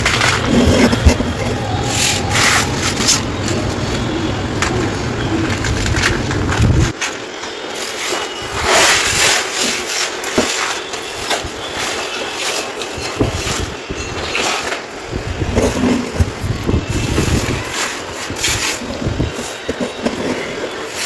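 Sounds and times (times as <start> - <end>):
concrete crumbling and scraping: 0.0 - 7.2.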